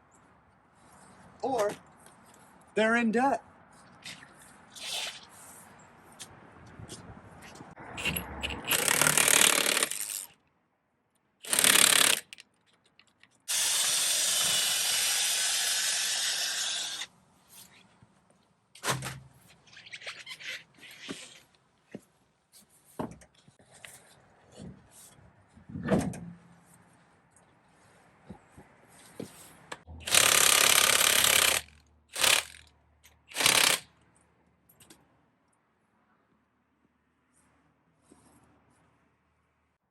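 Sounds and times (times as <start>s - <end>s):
power tool running: 13.5s - 17.1s, 30.1s - 32.6s, 33.3s - 33.8s.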